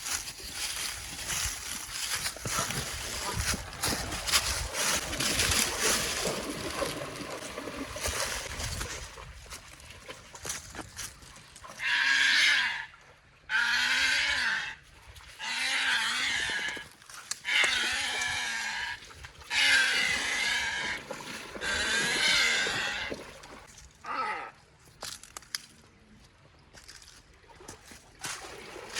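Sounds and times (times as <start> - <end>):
animal hoarse drawn-out cries: 13.5 - 14.8, 15.4 - 23.3.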